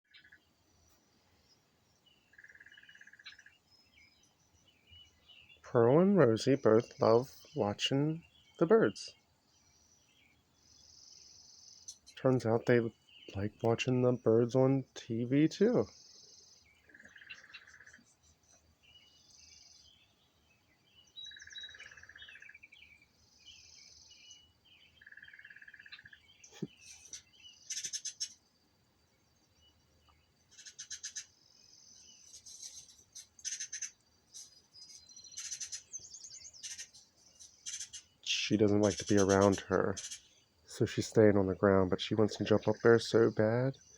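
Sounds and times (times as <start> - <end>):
rapid bird chirps: 0.0 - 43.9
high bird twittering: 2.3 - 9.2, 10.8 - 20.1, 21.0 - 28.4, 30.5 - 43.9
bird trills through tv speaker: 26.7 - 28.4, 30.5 - 31.3, 32.3 - 34.6, 35.3 - 35.9, 36.6 - 38.1.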